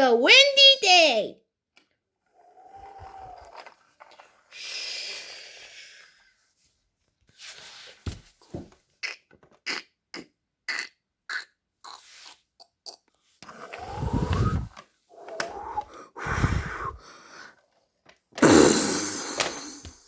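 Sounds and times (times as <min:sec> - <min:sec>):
faint breathy whoosh: 0:13.7 - 0:17.2.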